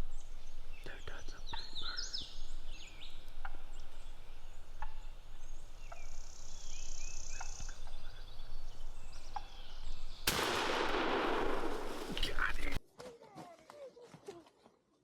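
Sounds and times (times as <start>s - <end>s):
loud shotgun blast: 10.3s - 12.8s.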